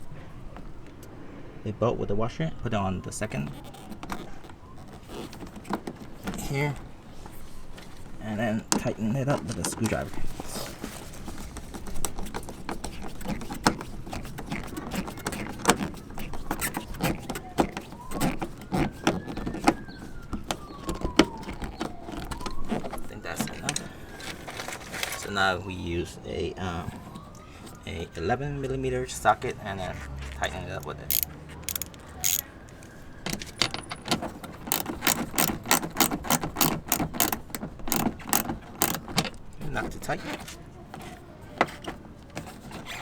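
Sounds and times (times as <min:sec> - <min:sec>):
screwdriver clicks and knocks: 0:30.8 - 0:32.5, 0:33.3 - 0:39.4.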